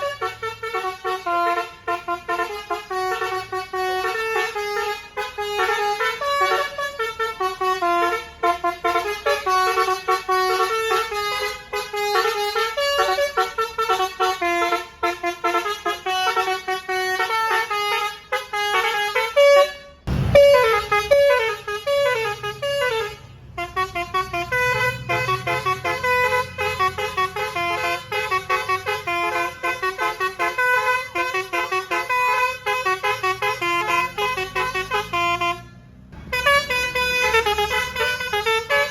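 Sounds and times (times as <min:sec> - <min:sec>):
bus horn playing melody: 0:00.0 - 0:38.9
low thump: 0:20.1 - 0:21.3.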